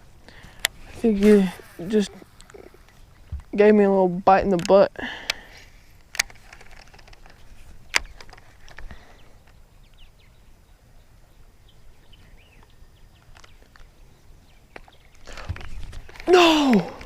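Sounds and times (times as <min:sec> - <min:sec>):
sharp clicks: 0:04.4 - 0:10.0
faint bird chirps: 0:07.2 - 0:16.9.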